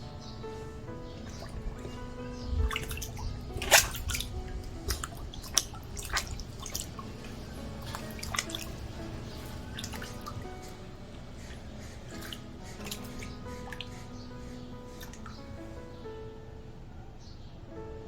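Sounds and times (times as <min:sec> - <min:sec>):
background music: 0:00.0 - 0:18.0
paws splashing in water: 0:01.1 - 0:10.8, 0:11.4 - 0:15.3.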